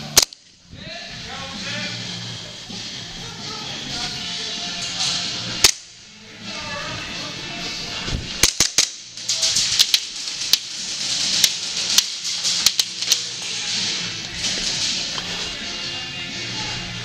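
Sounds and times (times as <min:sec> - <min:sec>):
airsoft pistol shots: 0:00.0 - 0:00.4, 0:05.6 - 0:05.9, 0:08.4 - 0:09.0
background music: 0:00.0 - 0:17.0.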